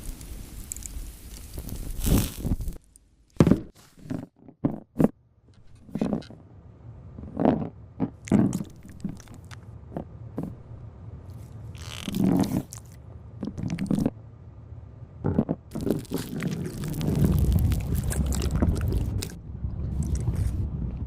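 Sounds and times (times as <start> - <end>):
small parts clicking and scraping: 11.3 - 14.1.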